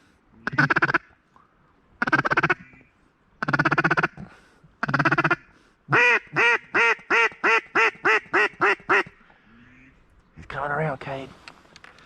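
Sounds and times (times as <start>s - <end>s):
duck call chatter: 0.4s - 1.1s, 2.0s - 4.2s, 4.8s - 10.0s
duck call quacks: 0.4s - 1.1s, 2.0s - 4.2s, 4.8s - 10.0s.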